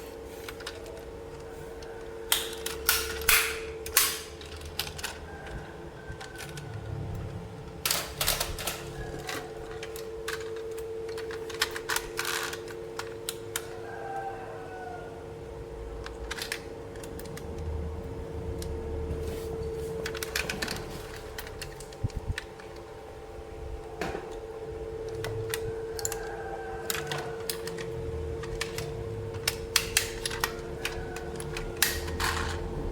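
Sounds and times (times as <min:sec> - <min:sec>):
steady hum: 0:00.0 - 0:32.9
plastic toy parts clicking: 0:16.0 - 0:17.7, 0:25.1 - 0:32.7.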